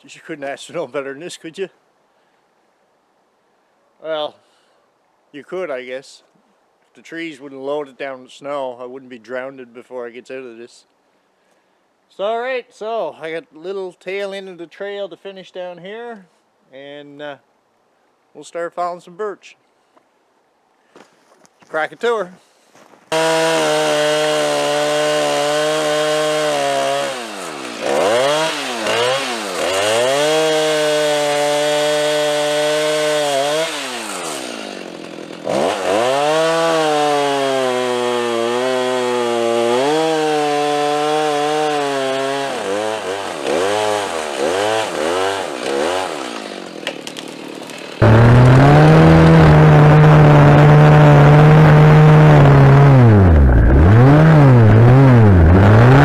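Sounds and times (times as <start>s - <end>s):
chainsaw engine revving: 23.1s - 56.0s.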